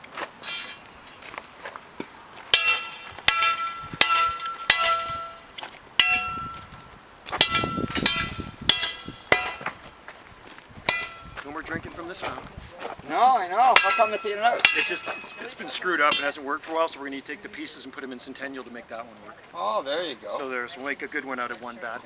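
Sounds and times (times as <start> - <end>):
hammer clanging on metal: 2.5 - 12.4, 13.6 - 16.4.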